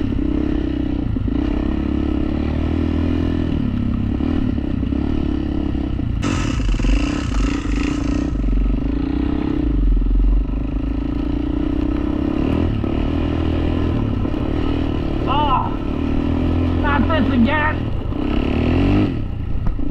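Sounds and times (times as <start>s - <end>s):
quad engine running: 0.0s - 19.9s
rushing hissing noise: 6.2s - 8.8s.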